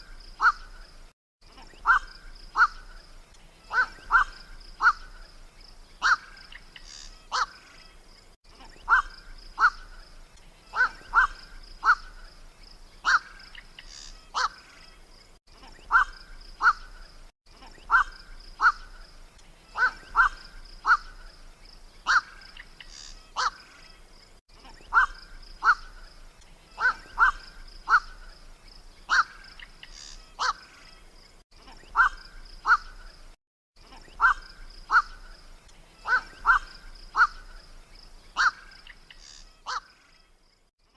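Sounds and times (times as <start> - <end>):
night heron harsh kwak calls: 0.4 - 0.8, 1.8 - 3.0, 3.6 - 5.2, 6.0 - 7.8, 8.6 - 10.1, 10.7 - 12.2, 13.0 - 14.9, 15.8 - 17.1, 17.8 - 19.0, 19.7 - 21.4, 22.0 - 23.8, 24.6 - 28.4, 29.1 - 30.9, 31.7 - 33.2, 33.9 - 37.7, 38.4 - 40.0.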